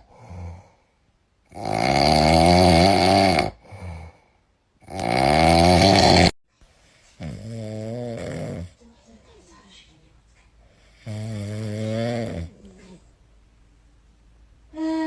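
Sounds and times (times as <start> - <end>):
cat snoring: 1.5 - 4.2, 4.8 - 6.4, 7.2 - 8.8, 10.8 - 12.6.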